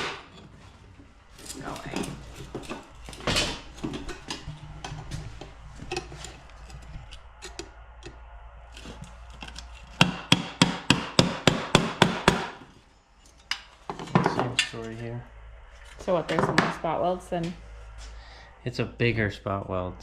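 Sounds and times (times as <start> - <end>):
hammer striking steel: 9.4 - 12.6.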